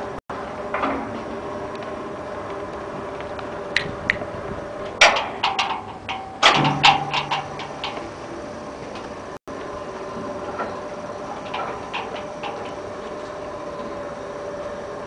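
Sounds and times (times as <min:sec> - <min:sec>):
steady machine hum: 0:00.0 - 0:15.0
sharp metallic clicks and knocks: 0:05.0 - 0:08.1.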